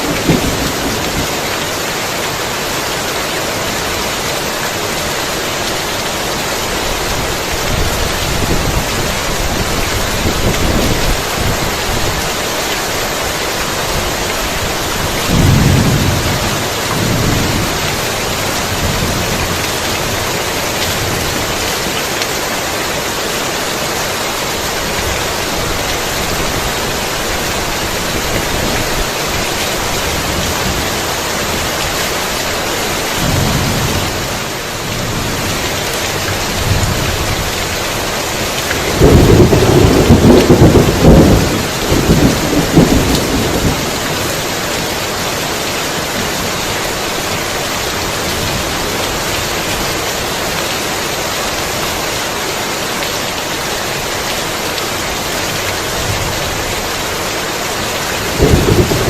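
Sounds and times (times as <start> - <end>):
low thunder rumbling: 0.0 - 1.4, 15.0 - 20.4, 33.2 - 37.5, 38.8 - 44.3, 58.2 - 59.0
heavy rain falling: 0.0 - 59.0.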